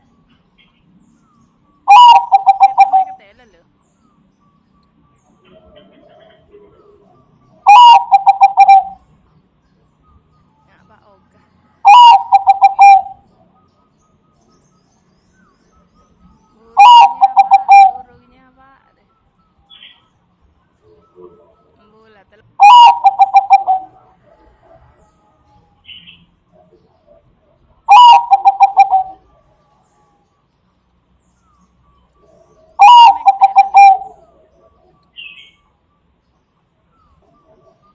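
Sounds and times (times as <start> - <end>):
faint high chirp: 0.0 - 37.9
dove cooing: 1.9 - 3.2, 5.4 - 9.1, 11.8 - 13.6, 16.6 - 18.2, 22.6 - 30.2, 32.2 - 35.6, 37.0 - 37.9.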